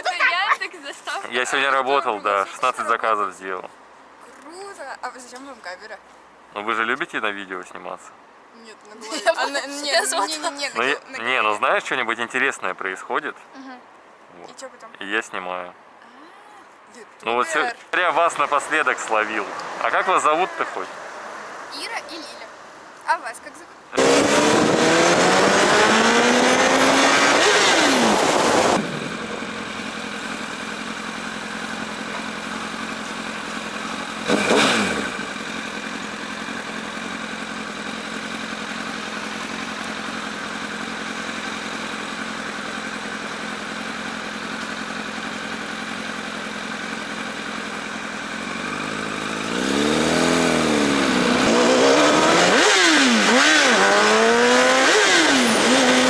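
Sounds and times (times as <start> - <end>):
passing vehicle: 17.6 - 56.0
motorcycle engine revving: 18.0 - 23.0, 24.0 - 56.0.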